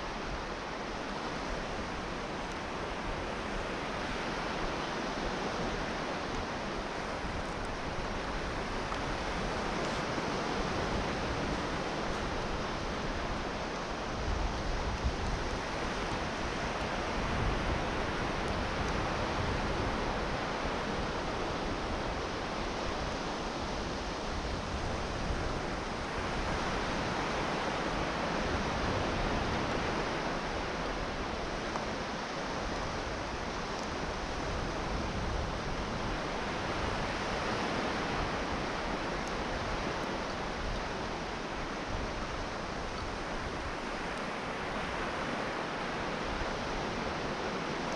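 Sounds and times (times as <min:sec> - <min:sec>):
wind rumble on microphone: 0:00.0 - 0:47.9.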